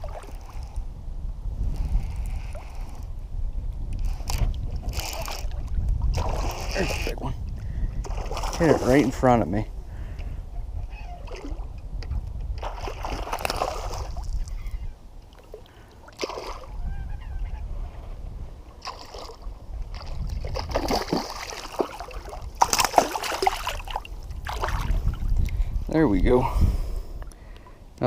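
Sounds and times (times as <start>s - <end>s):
steady low rumble: 0.0s - 10.9s, 23.4s - 28.0s
fish splashing in water: 16.0s - 16.8s, 18.8s - 25.0s.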